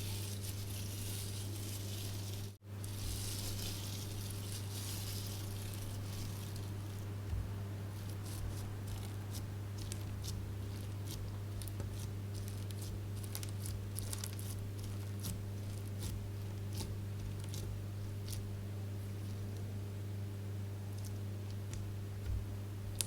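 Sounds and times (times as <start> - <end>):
steady low hum: 0.0 - 23.0
slime crackling and popping: 10.7 - 16.1.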